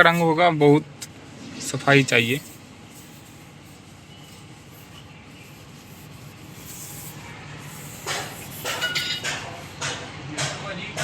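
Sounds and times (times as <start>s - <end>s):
cloth rubbing metal rim: 1.9s - 10.0s.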